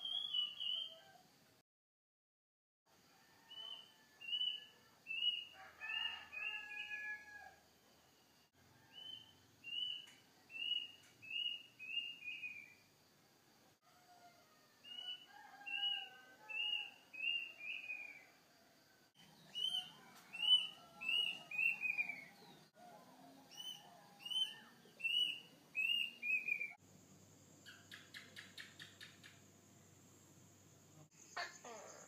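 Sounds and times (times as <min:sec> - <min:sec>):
softer bird calls: 0:27.6 - 0:29.5.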